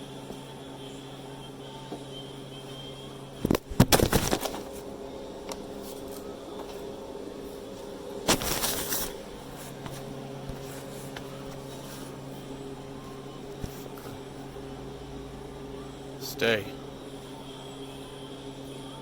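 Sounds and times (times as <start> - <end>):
electrical hum: 0.0 - 19.0.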